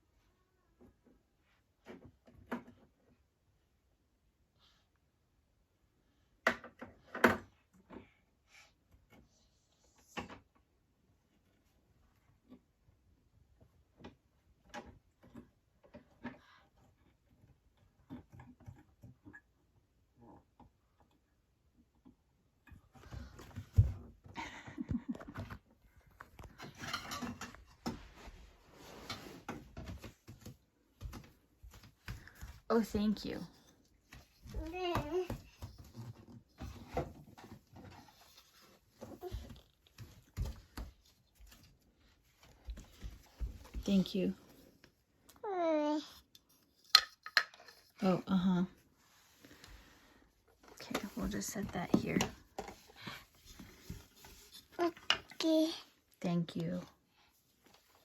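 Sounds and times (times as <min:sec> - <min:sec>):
knocks and clatter of toy kitchen: 0:00.7 - 0:04.0, 0:06.0 - 0:58.0
small toys clicking and rustling: 0:46.3 - 0:48.0.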